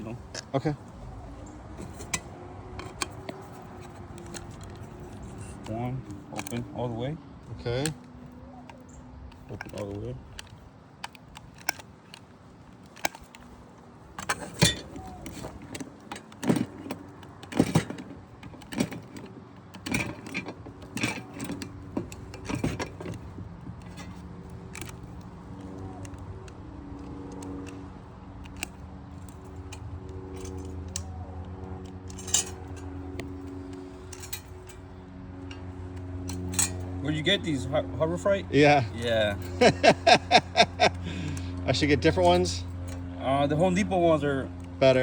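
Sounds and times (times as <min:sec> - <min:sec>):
rivet gun clicking and clacking: 0:09.3 - 0:27.8.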